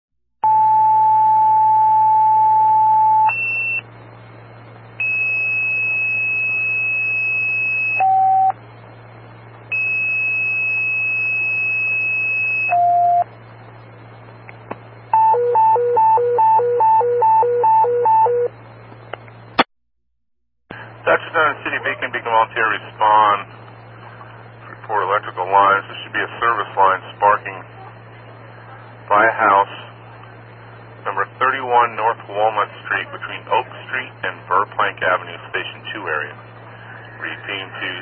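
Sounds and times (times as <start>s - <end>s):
steady low hum: 0.4s - 19.7s, 20.7s - 38.0s
two-tone paging tones: 15.2s - 18.5s
radio hiss: 20.7s - 38.0s.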